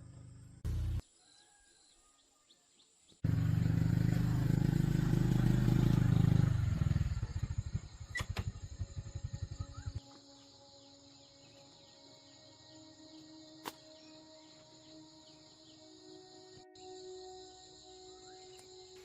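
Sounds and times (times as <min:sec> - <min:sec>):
faint birdsong: 0:00.0 - 0:19.0
diesel engine running and idling: 0:00.6 - 0:01.0.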